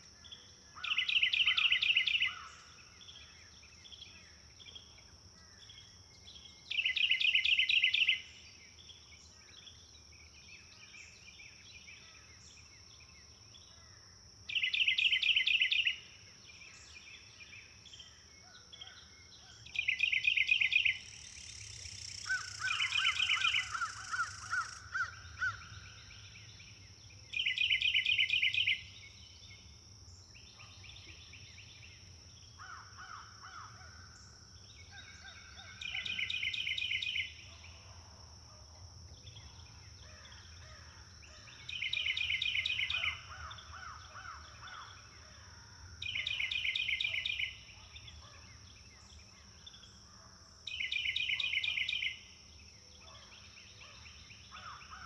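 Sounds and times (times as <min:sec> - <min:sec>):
quieter lower bird trills: 0:18.8 - 0:26.5.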